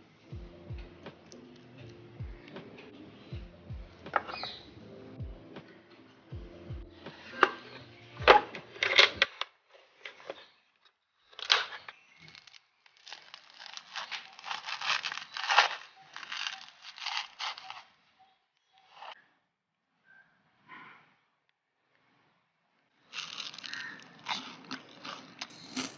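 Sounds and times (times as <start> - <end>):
banana bread crunching: 11.4 - 18.0, 23.0 - 25.9.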